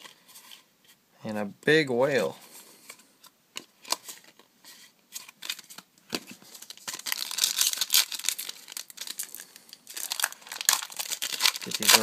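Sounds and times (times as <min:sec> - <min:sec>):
foil pack crinkling and tearing: 0:06.5 - 0:12.0.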